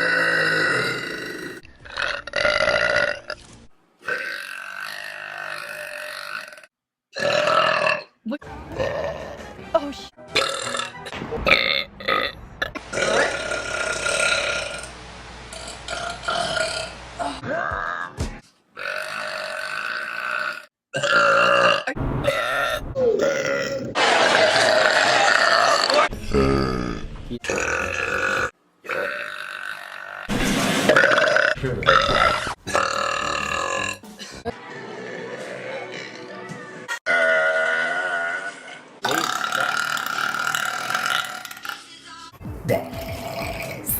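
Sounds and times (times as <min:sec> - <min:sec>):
woman burping: 0:12.0 - 0:14.8, 0:18.8 - 0:23.8, 0:39.0 - 0:41.8.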